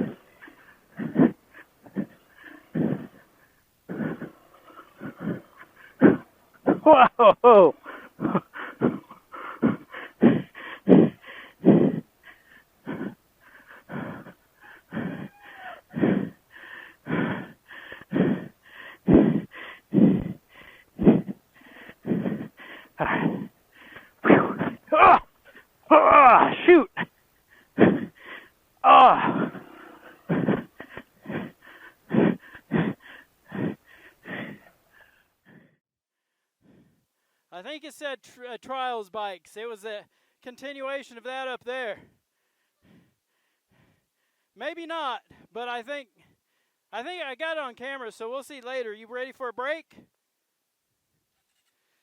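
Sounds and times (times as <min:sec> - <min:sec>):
man gasping for breath: 0:00.0 - 0:25.7, 0:27.5 - 0:37.5, 0:40.1 - 0:40.4, 0:42.0 - 0:44.6, 0:45.3 - 0:45.5, 0:46.1 - 0:46.8
man panting hard: 0:00.0 - 0:25.8, 0:26.5 - 0:35.8, 0:36.6 - 0:37.5, 0:41.7 - 0:46.9.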